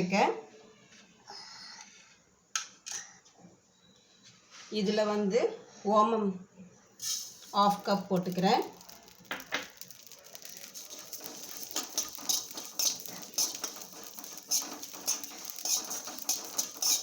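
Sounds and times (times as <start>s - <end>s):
spatula stirring seeds in a pan: 7.0s - 17.0s.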